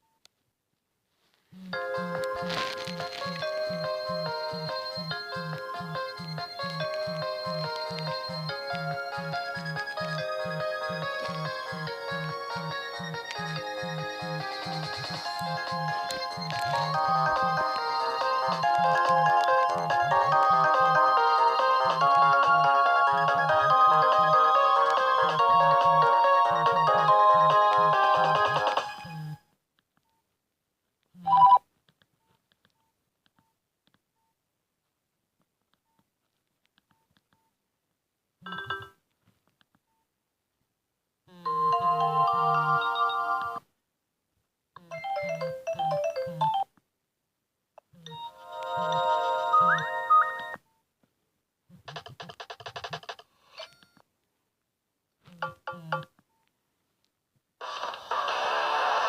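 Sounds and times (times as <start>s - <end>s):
phone ringtone melody: 1.7s - 29.4s, 41.4s - 43.6s, 44.9s - 46.7s, 48.0s - 50.6s.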